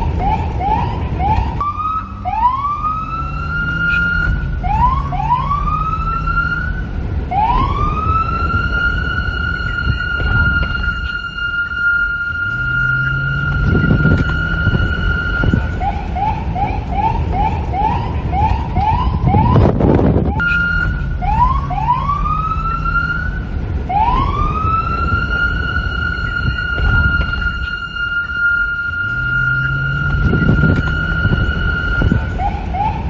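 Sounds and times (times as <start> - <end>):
police siren wailing and yelping: 0.0 - 33.0
wind noise: 0.0 - 33.0.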